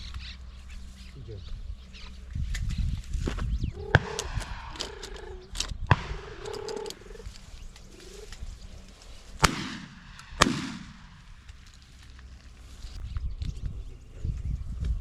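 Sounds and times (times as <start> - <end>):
shotgun shots: 3.9 - 5.0, 5.8 - 6.7, 9.4 - 11.4.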